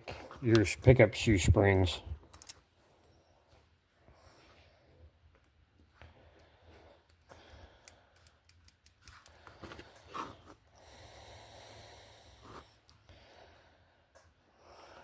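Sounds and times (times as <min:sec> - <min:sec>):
small plastic parts clicking: 0:02.3 - 0:02.6, 0:07.1 - 0:09.6.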